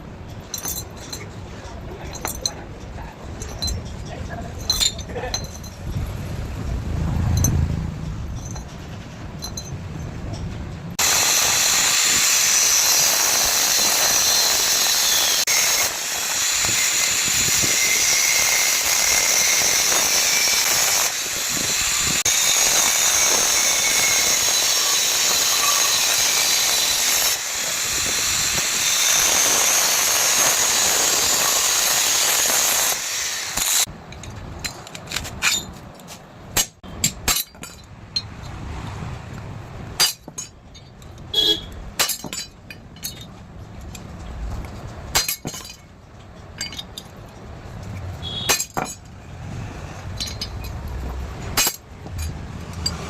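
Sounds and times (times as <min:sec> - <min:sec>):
sharp metal clicks and knocks: 0:00.2 - 0:06.0, 0:33.6 - 0:49.2, 0:50.0 - 0:53.0
angle grinder on steel: 0:11.0 - 0:33.9.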